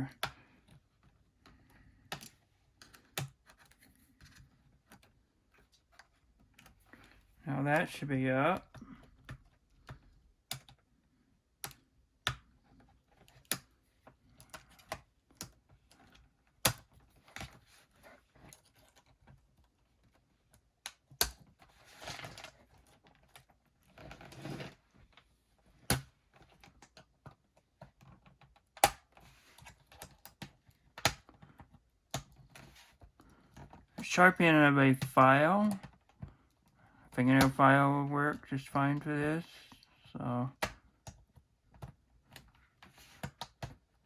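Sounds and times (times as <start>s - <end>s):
plastic keyboard clicks and taps: 1.4s - 5.1s, 8.6s - 10.8s, 11.6s - 17.6s, 25.9s - 32.7s, 40.6s - 42.6s.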